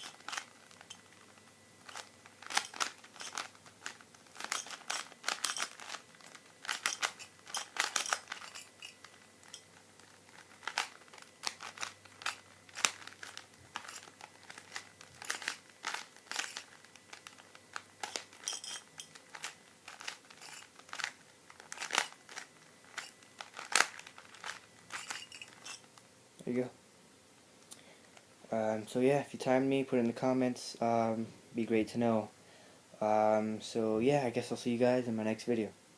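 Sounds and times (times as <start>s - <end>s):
rubik's cube clicking: 0.0s - 25.9s.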